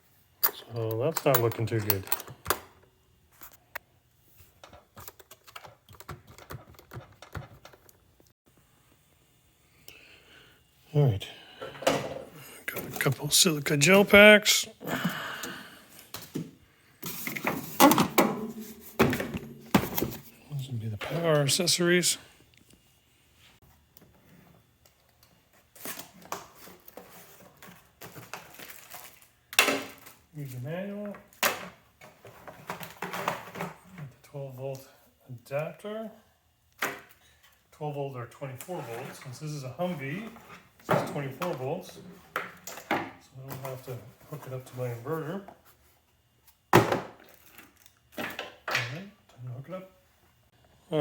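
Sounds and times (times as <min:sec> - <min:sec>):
hands handling packaging: 0:26.8 - 0:29.3
packaging rustling: 0:28.1 - 0:29.3.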